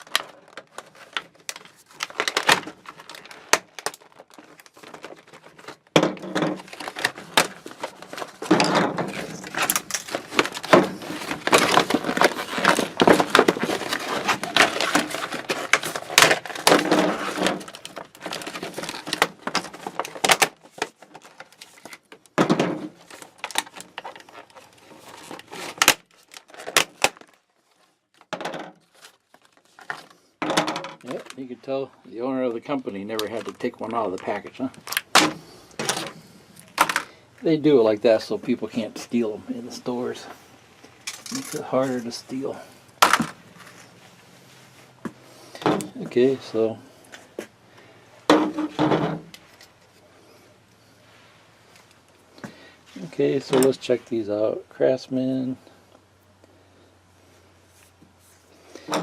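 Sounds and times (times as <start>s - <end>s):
plastic packaging snapping: 0.0s - 27.4s, 33.1s - 37.1s
plastic packaging crackling: 0.0s - 30.2s, 30.9s - 40.3s, 40.9s - 44.1s.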